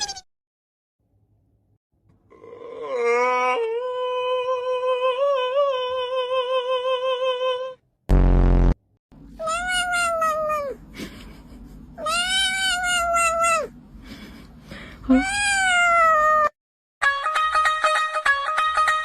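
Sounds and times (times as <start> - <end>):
low buzz: 8.1 - 8.8
cat meowing: 9.4 - 10.8, 15.1 - 16.5.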